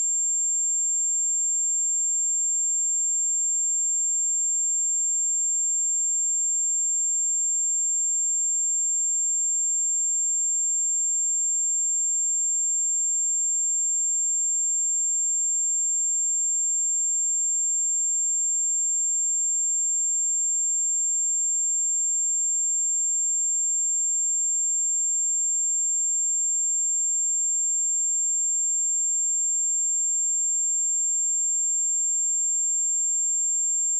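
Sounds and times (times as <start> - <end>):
high-pitched sine test tone: 15.3 - 33.9.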